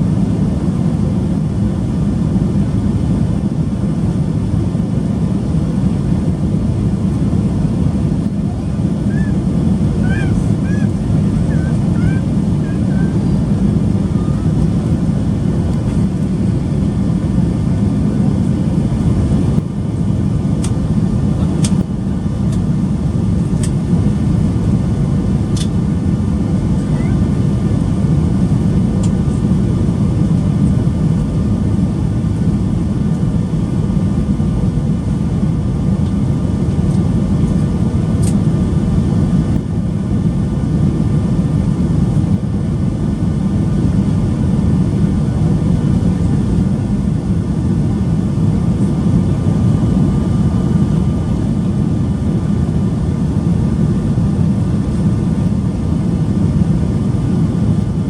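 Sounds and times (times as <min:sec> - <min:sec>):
airplane cabin engine roar: 0:00.0 - 0:58.0.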